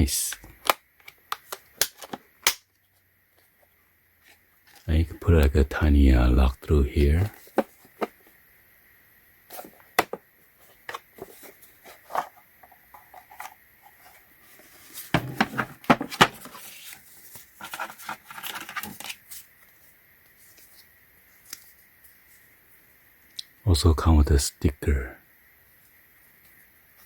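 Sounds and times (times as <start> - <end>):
plastic tool case clicks and knocks: 10.0 - 10.2, 15.2 - 16.5
soft rustling: 10.5 - 22.9.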